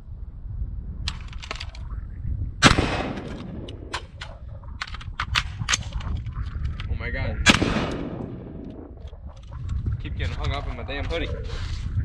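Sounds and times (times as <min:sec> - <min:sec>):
rifle shot with echo: 0:02.6 - 0:04.4, 0:07.4 - 0:09.0
sharp clicks and knocks: 0:03.0 - 0:07.0.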